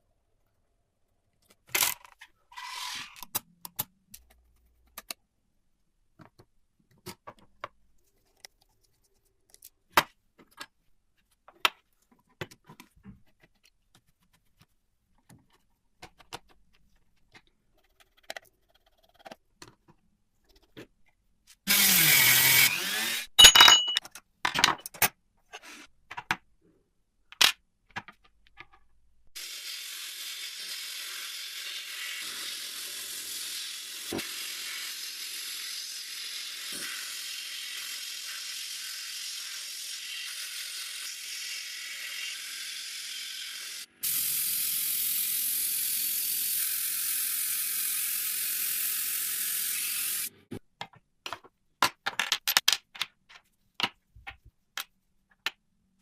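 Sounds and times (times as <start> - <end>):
metal tools clinking: 23.4 - 24.1.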